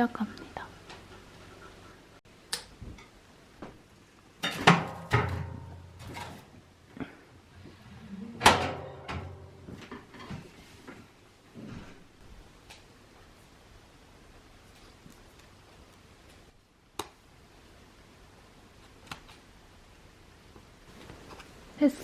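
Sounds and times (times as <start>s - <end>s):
household objects knocking and clattering: 4.4s - 6.5s.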